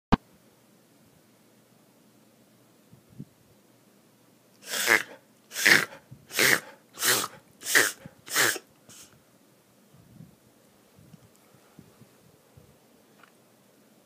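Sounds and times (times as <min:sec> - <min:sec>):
dog coughing: 0:04.6 - 0:09.0.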